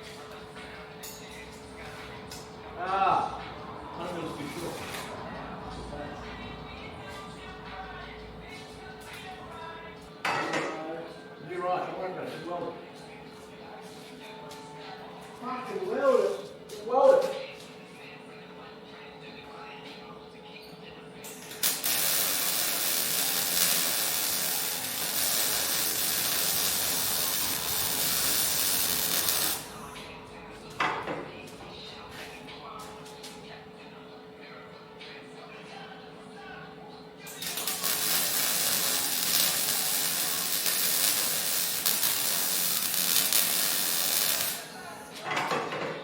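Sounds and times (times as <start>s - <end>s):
welding arc hissing: 21.5s - 29.9s, 37.4s - 44.8s.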